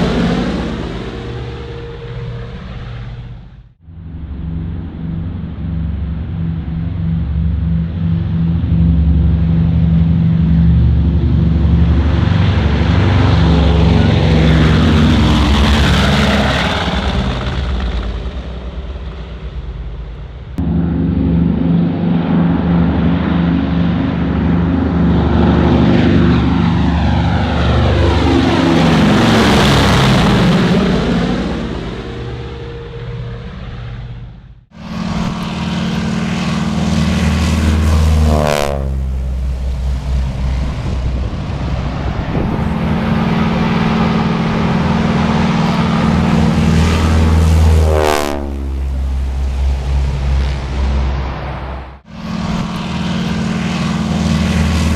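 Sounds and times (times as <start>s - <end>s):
propeller aircraft flying past: 0.0s - 54.9s.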